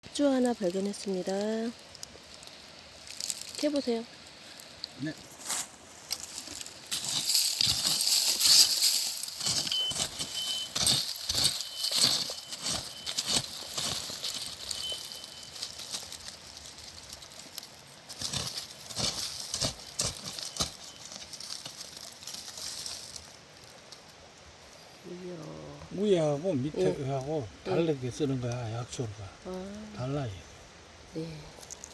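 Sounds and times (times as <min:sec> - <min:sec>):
leaves rustling: 0:00.0 - 0:31.9
hands digging in soil: 0:00.2 - 0:23.6.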